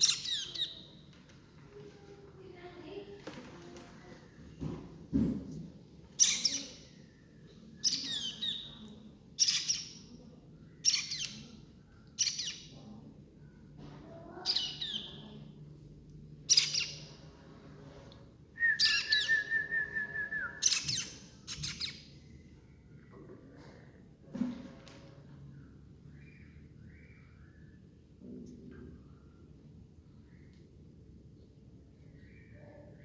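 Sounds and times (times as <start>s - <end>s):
baby birds chirping: 0.0s - 1.0s, 6.1s - 12.9s, 14.3s - 15.6s, 16.4s - 17.3s, 18.6s - 22.8s.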